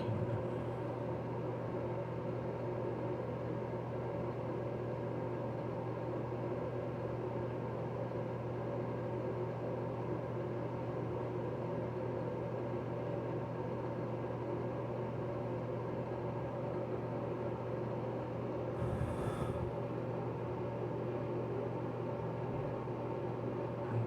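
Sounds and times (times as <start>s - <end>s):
steady mechanical hum: 0.0s - 24.0s.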